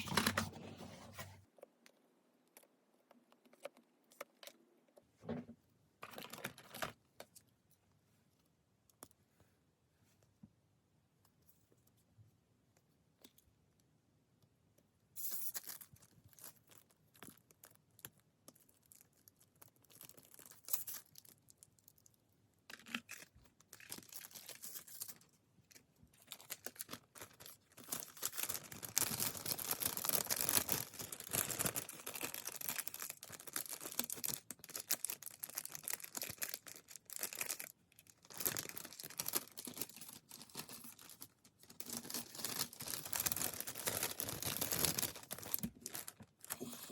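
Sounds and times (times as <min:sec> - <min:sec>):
packaging torn and crinkled: 0:15.5 - 0:17.8, 0:18.9 - 0:21.7, 0:22.7 - 0:25.2, 0:26.2 - 0:46.6.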